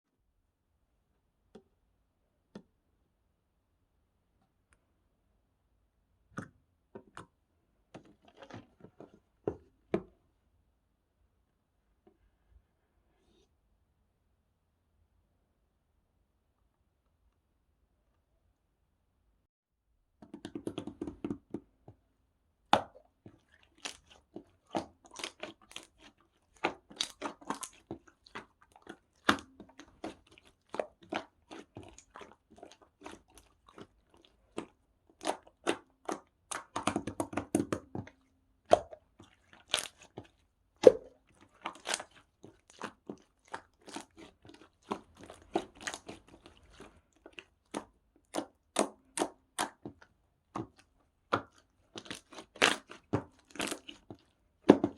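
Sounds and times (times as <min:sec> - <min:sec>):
slime squished by hand: 0:22.7 - 0:54.9.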